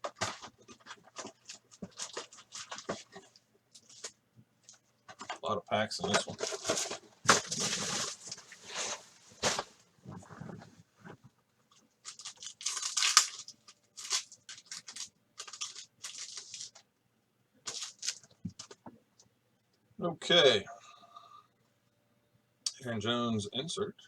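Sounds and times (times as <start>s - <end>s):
plastic wrapping tearing and crinkling: 0.1s - 3.2s, 6.3s - 10.6s, 12.0s - 16.8s, 17.7s - 18.7s.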